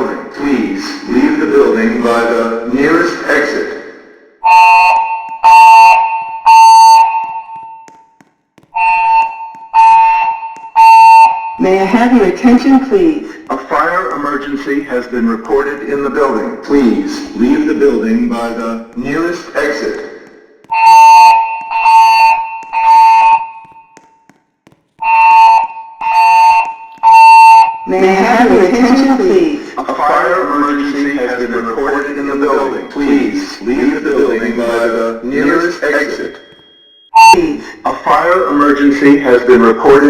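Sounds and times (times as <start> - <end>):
fire alarm beeps: 4.4 - 7.9, 8.7 - 13.4, 20.7 - 24.0, 25.0 - 29.8, 35.4 - 37.8.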